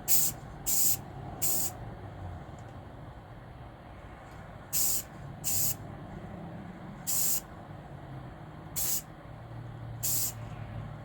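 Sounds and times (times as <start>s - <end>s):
spray paint can bursts: 0.1s - 1.7s, 4.8s - 5.8s, 7.1s - 7.4s, 8.8s - 9.0s, 10.0s - 10.4s.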